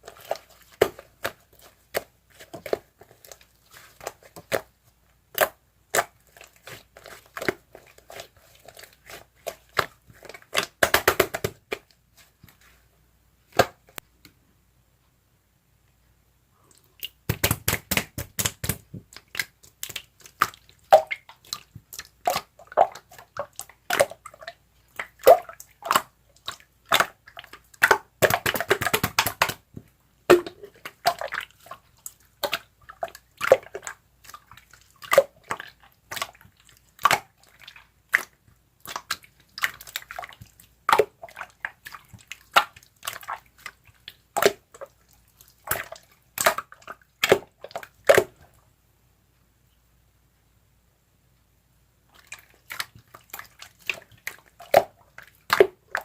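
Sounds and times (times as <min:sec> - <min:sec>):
slime squeezed with wet pops: 0:00.0 - 0:12.5, 0:16.7 - 0:48.5, 0:52.1 - 0:56.0.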